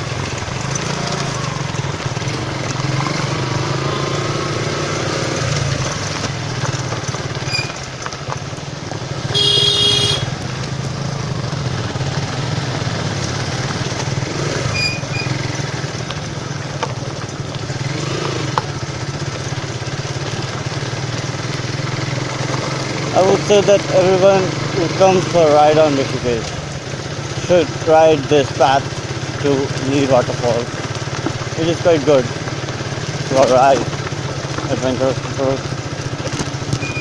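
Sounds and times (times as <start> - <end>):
motorcycle engine running: 0.0 - 37.0
horn honking: 9.2 - 10.4.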